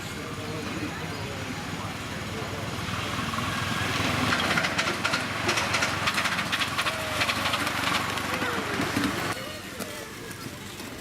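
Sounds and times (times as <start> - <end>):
steam locomotive exhaust beats: 0.0 - 9.3.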